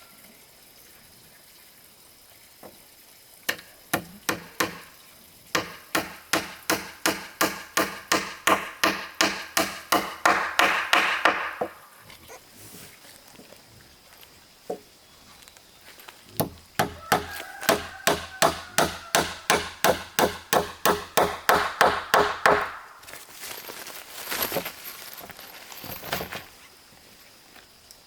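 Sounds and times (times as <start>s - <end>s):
tool striking wood: 3.5s - 5.0s, 5.6s - 11.9s, 16.4s - 23.0s.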